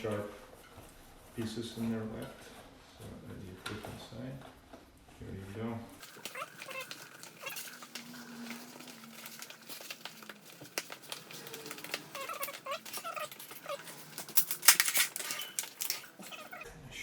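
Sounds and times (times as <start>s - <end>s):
rubber inner tube rustling and clicks: 6.0s - 16.6s.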